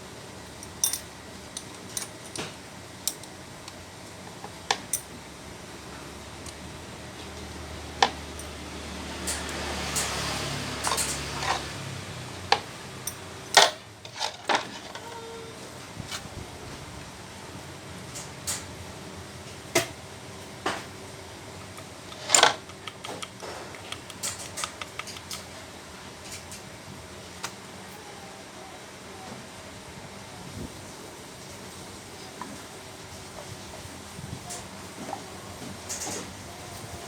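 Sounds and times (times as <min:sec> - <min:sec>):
metal tools clinking on workbench: 0:00.6 - 0:02.5.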